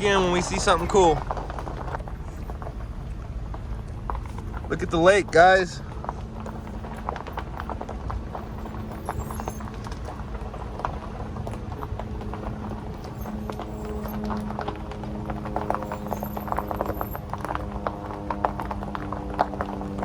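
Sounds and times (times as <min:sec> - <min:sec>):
car interior rumble: 0:00.0 - 0:20.0.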